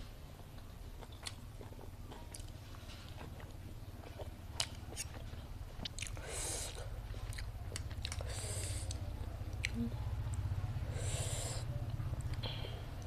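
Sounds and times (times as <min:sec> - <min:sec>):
steady low hum: 0:00.0 - 0:13.0
chewing and wet mouth sounds: 0:00.3 - 0:13.0.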